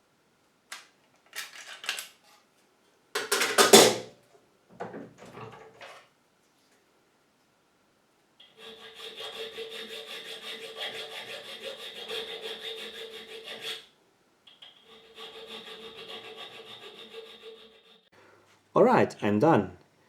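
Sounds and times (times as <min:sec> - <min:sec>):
hand file rasping on metal key: 0:08.4 - 0:13.9, 0:14.6 - 0:18.1.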